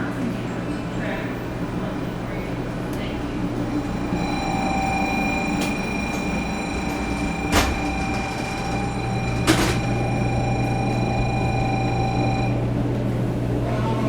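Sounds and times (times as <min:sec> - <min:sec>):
electrical whine: 0:03.1 - 0:12.9.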